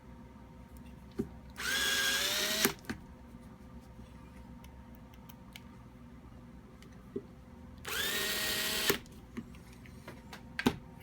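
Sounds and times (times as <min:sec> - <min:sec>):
electric drill motor whine: 0:01.6 - 0:02.8, 0:07.8 - 0:09.0.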